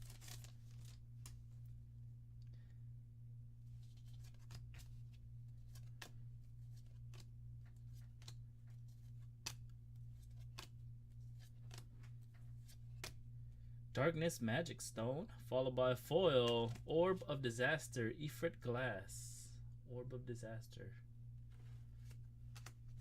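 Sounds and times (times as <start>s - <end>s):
trading cards and wrapper rustling: 0.0s - 1.4s
steady low hum: 0.0s - 23.0s.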